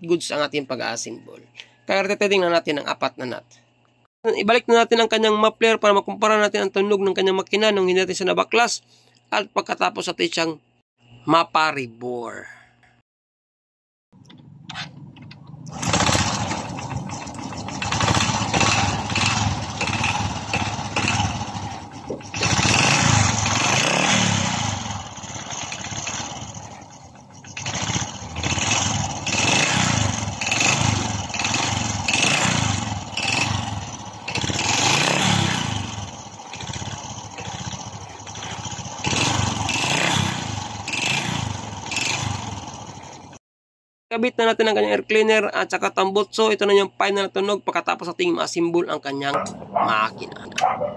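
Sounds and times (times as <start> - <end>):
motorcycle engine revving: 14.2 - 43.4.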